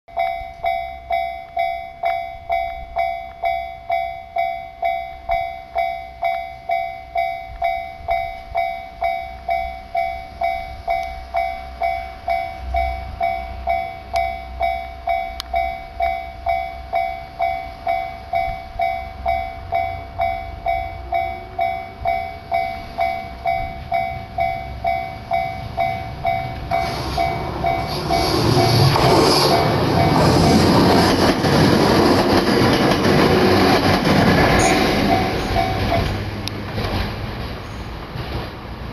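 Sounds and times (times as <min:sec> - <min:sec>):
level-crossing warning bell: 0:00.1 - 0:36.5
train running noise: 0:00.2 - 0:38.9.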